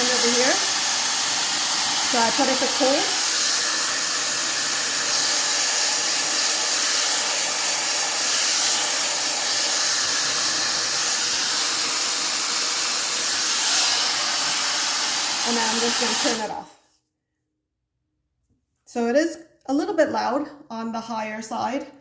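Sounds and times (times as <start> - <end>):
hair dryer blowing air: 0.0 - 16.8.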